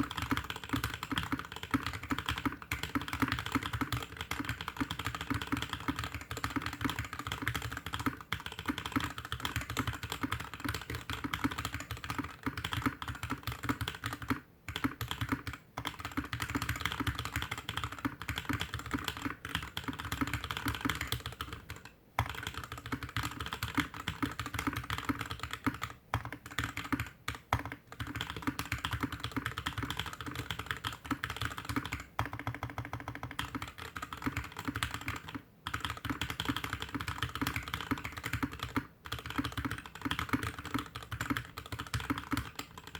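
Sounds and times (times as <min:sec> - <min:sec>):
mechanical keyboard typing: 0:00.0 - 0:42.9.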